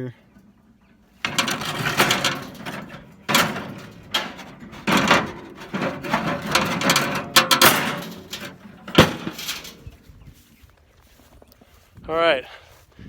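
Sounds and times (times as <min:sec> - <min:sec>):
handling knocks and rustles: 0:01.2 - 0:10.3.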